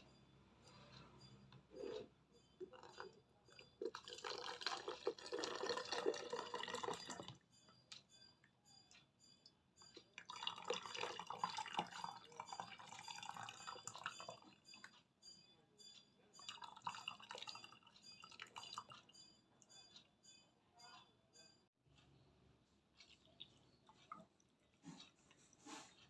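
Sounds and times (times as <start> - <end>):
liquid pouring into a glass: 2.6 - 7.3, 10.2 - 14.4, 16.4 - 19.0.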